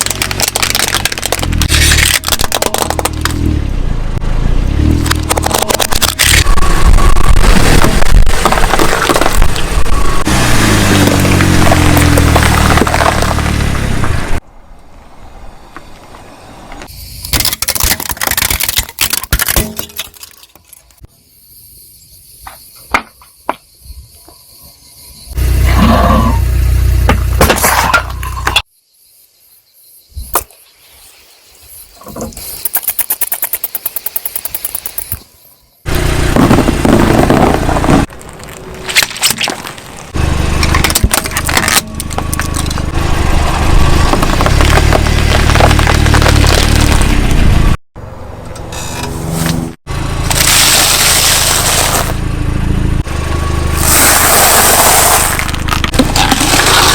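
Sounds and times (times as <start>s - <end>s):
objects crunching under car tyre: 0.0s - 3.7s, 4.6s - 14.4s, 16.7s - 21.1s, 25.4s - 28.7s, 35.9s - 47.8s, 48.7s - 56.9s.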